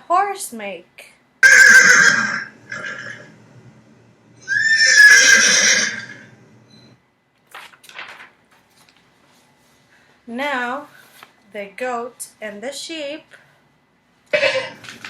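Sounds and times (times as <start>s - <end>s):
horse whinnying: 1.4s - 3.3s, 4.4s - 6.3s, 14.4s - 14.9s.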